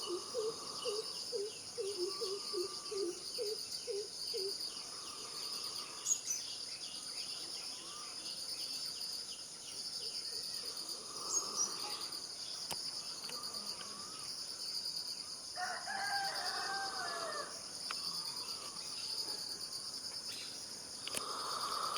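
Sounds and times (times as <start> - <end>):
long arching bird call: 0.0 - 5.8
insects chirring: 0.0 - 21.9.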